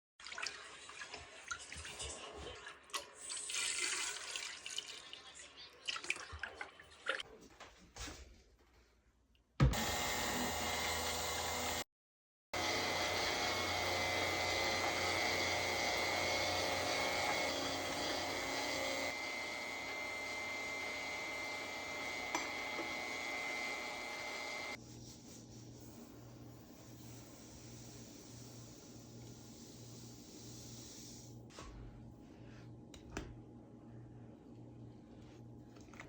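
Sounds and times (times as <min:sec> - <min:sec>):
electric mixer motor whirring: 0:09.6 - 0:11.9, 0:12.6 - 0:24.8.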